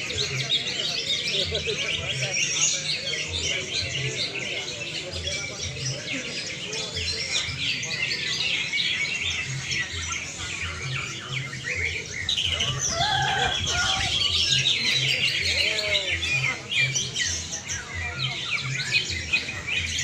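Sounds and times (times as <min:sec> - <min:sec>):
birds chirping and trilling: 0:00.0 - 0:20.0.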